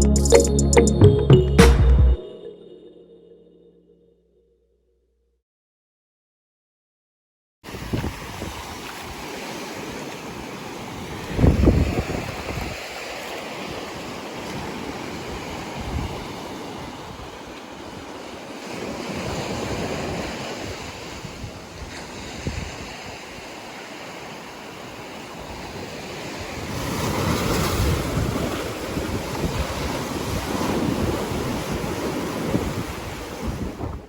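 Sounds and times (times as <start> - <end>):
sea surf washing ashore: 7.7 - 34.0
wind buffeting microphone: 11.2 - 12.8.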